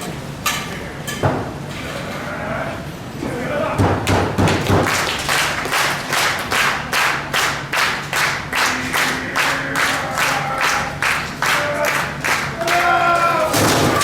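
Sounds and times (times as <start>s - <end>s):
crowd clapping in unison: 4.5s - 13.0s.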